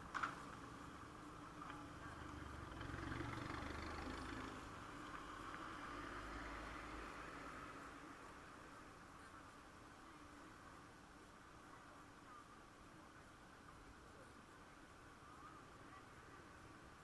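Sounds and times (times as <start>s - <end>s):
vehicle engine rumble passing: 0.0s - 7.6s.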